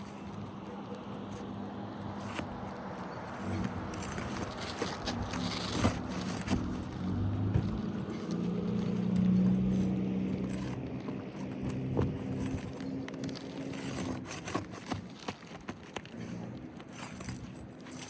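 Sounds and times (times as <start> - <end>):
tool scraping shingles: 0.0 - 18.0.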